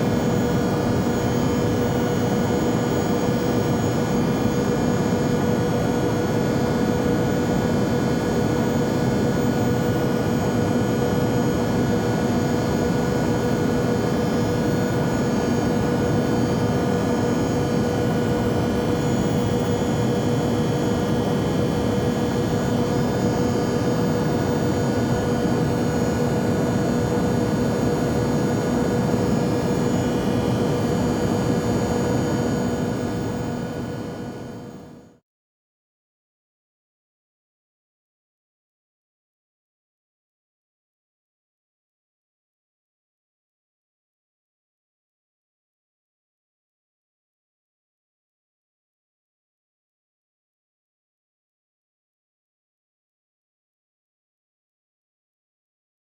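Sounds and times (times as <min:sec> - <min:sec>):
jet engine drone: 0:00.0 - 0:35.1.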